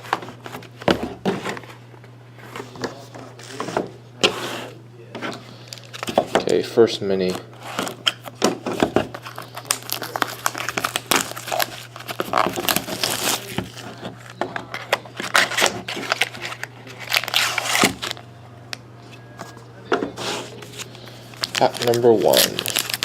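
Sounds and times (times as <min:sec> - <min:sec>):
plastic wrapping crinkling: 0:05.6 - 0:06.6, 0:09.1 - 0:18.2, 0:20.6 - 0:23.0.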